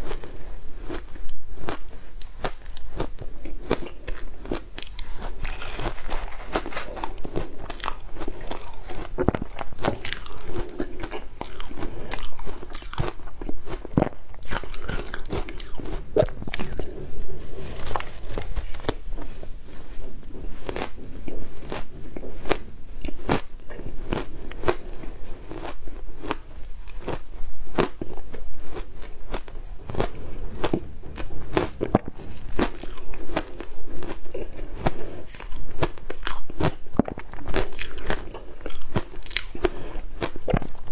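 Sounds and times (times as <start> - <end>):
chewing crunchy ice: 0.0 - 19.4, 20.6 - 40.9.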